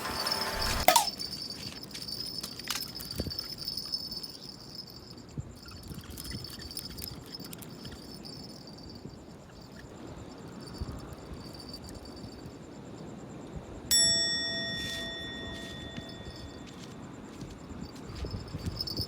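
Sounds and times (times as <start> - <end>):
background music: 0.0 - 0.9
insects trilling: 0.0 - 13.9.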